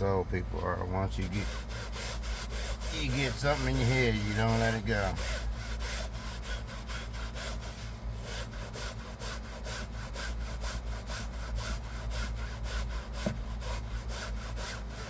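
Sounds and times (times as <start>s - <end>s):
brush scrubbing fabric upholstery: 0.6s - 8.8s.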